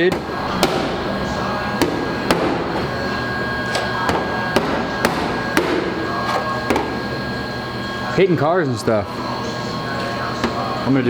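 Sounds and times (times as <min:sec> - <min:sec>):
hammer striking sheet metal: 0:00.0 - 0:07.5
steady background hum: 0:00.0 - 0:11.0.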